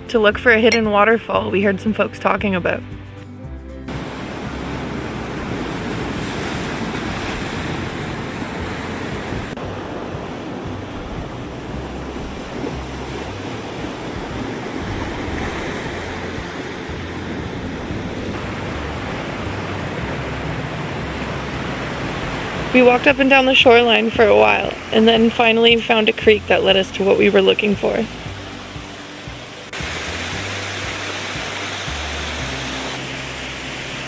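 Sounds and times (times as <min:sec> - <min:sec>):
ocean surf washing onto beach: 0:03.9 - 0:34.0
wind buffeting microphone: 0:04.0 - 0:29.6.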